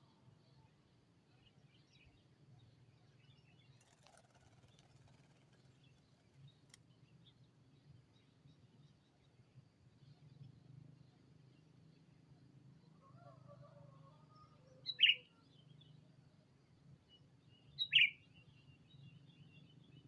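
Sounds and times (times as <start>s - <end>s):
faint bird chirps: 13.1s - 15.9s, 17.1s - 20.0s.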